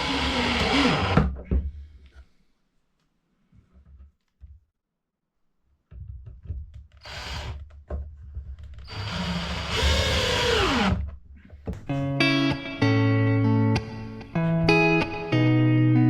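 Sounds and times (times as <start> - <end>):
handheld power tool running: 0.0 - 1.2, 7.0 - 7.6, 8.9 - 11.0
guitar music: 11.9 - 16.0.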